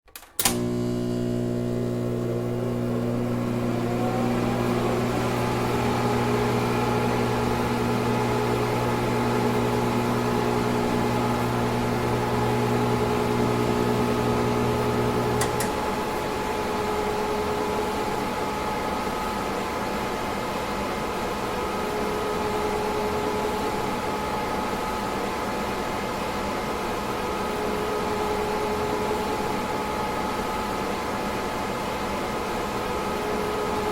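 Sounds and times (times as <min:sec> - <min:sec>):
cooling fans whirring: 0:00.4 - 0:33.9
short click: 0:15.4 - 0:15.8.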